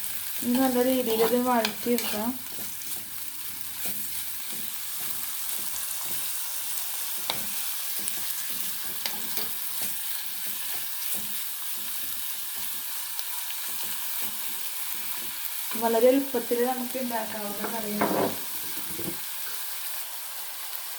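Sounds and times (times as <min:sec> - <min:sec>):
food sizzling in hot oil: 0:00.0 - 0:20.9
utensil clicking against pan: 0:00.5 - 0:02.8.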